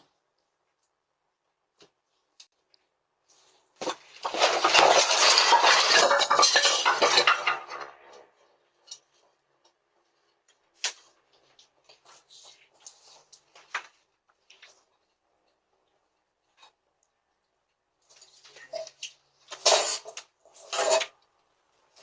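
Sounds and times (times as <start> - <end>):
hard objects clattering: 3.8 - 9.4, 19.5 - 21.3.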